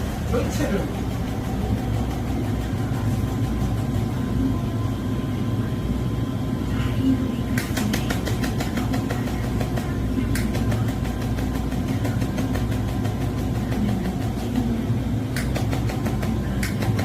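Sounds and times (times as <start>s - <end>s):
rapid laser pulse clicks: 15.3s - 17.0s.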